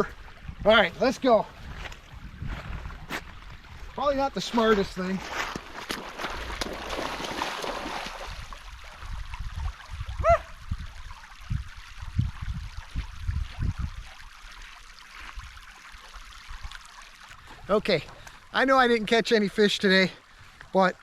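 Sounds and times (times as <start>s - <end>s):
rushing river water: 3.2s - 21.0s
splashing steps in water: 4.4s - 8.6s.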